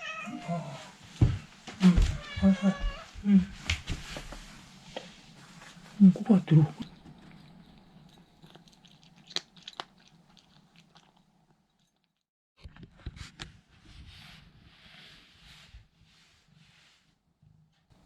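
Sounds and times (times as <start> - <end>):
cat crunching dry treats: 6.8 - 11.9.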